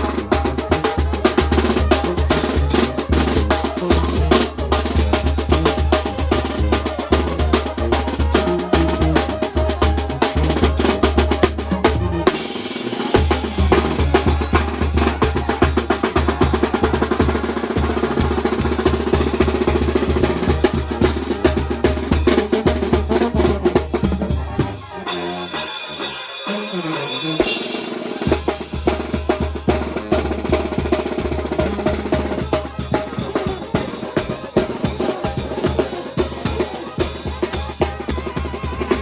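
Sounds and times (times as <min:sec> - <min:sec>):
band music: 0:00.0 - 0:39.0
drum kit playing a driving beat: 0:00.0 - 0:39.0.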